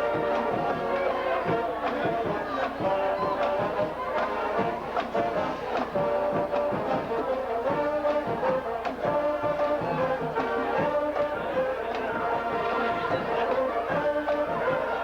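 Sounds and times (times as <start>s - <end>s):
brass horns playing tune: 0.0s - 1.2s.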